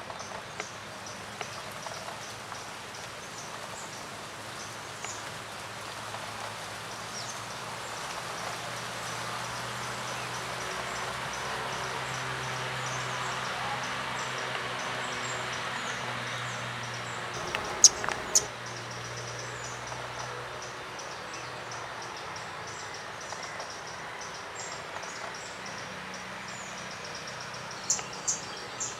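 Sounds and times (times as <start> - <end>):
bird giving sharp clicking calls: 17.4 - 18.5
fast high bird chirping: 17.4 - 18.5.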